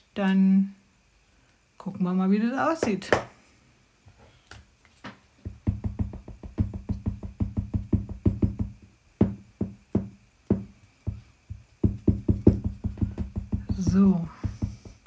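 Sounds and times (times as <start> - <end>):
embossing dabber tapping: 10.5 - 15.0.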